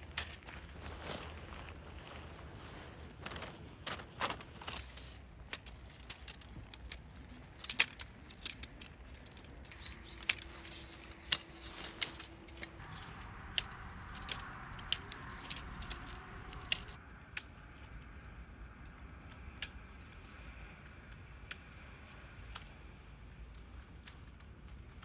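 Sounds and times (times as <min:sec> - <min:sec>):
small objects clicking and clinking: 0:00.0 - 0:17.0.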